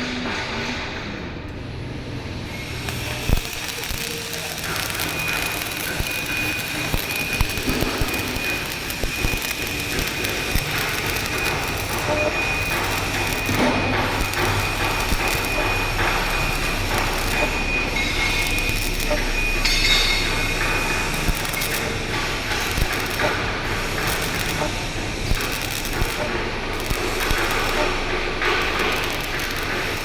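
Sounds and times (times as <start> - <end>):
machinery low hum: 0.1 - 30.0
machinery high whine: 1.5 - 30.0
knocks and clicks: 2.9 - 30.0.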